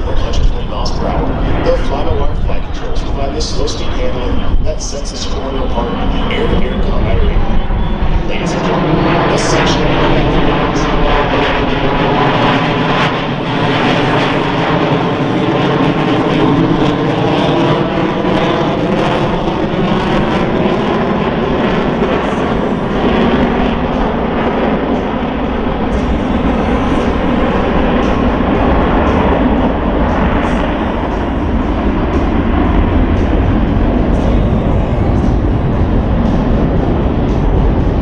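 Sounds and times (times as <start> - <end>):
jet engines flying by: 0.0 - 38.0.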